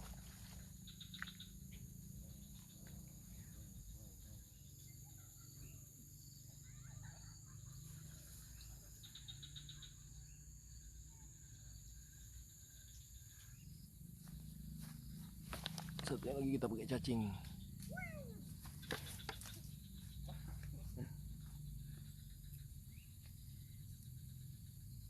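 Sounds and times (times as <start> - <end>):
insect drone: 0.0 - 25.0
faint bird-like chirps: 0.8 - 13.9.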